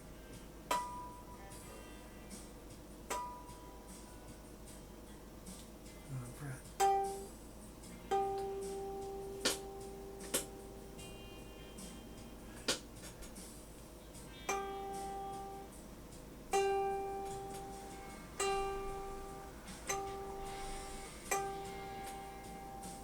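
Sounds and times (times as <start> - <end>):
guitar string plucked: 14.3 - 15.7, 16.5 - 23.0.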